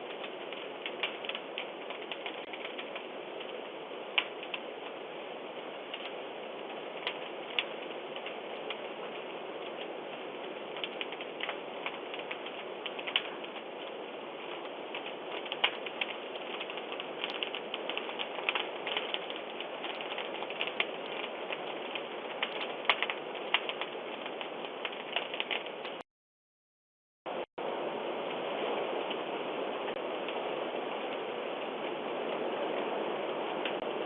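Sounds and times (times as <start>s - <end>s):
fire crackling and popping: 0.0s - 26.1s, 27.6s - 34.0s
steady rushing noise: 27.4s - 34.0s.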